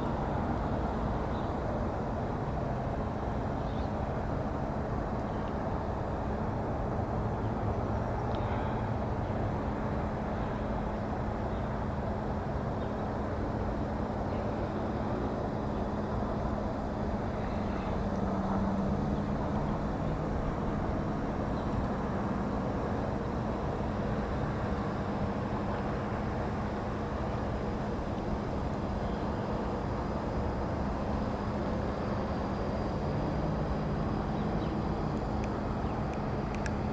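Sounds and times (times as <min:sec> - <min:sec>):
engine drone: 0:12.0 - 0:36.9.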